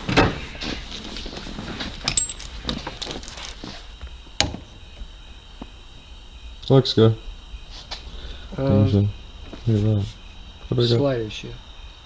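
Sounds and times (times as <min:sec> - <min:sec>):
clicks and knocks of hand work: 0:00.1 - 0:04.8.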